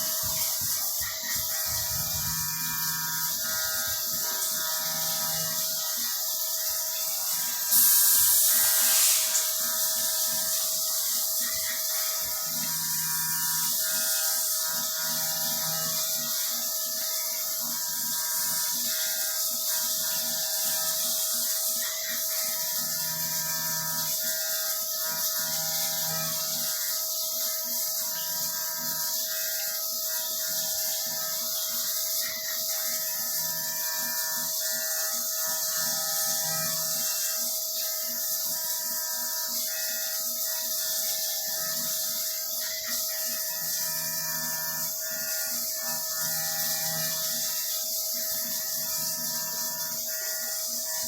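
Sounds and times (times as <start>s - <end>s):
high hiss: 0.0s - 15.2s
metal cutting sound: 0.0s - 51.0s
milling machine spindle whine: 0.0s - 51.0s.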